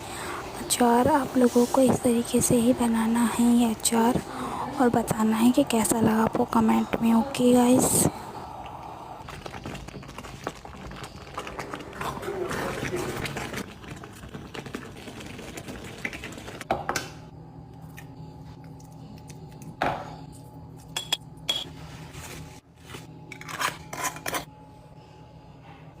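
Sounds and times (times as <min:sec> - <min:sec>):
steady hum: 0:00.0 - 0:13.4
utensils clinking against dishes: 0:20.9 - 0:21.8, 0:23.3 - 0:24.5.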